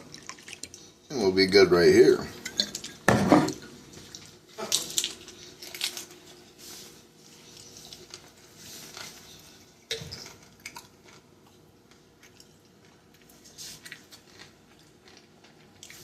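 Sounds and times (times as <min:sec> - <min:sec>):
person chewing food: 0:03.8 - 0:16.0.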